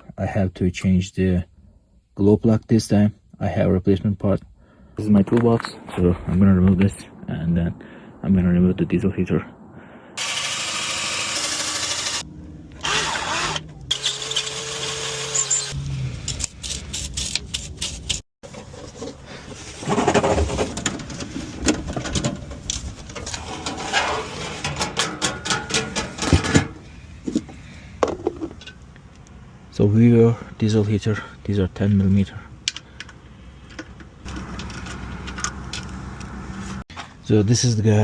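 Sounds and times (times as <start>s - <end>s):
metal clattering: 19.8s - 26.8s.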